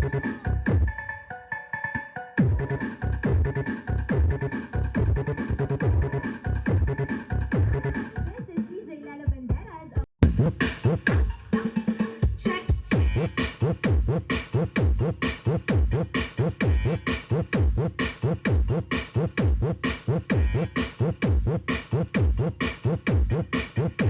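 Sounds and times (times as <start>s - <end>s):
electronic dance music: 0.0s - 8.6s, 10.2s - 24.0s
heavy kick drum: 2.4s - 8.0s, 9.3s - 11.3s, 12.2s - 18.8s, 19.4s - 24.0s.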